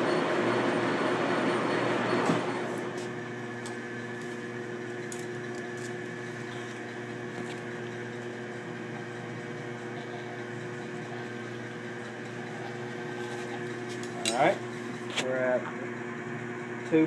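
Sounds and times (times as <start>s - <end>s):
lathe running: 0.0s - 17.0s.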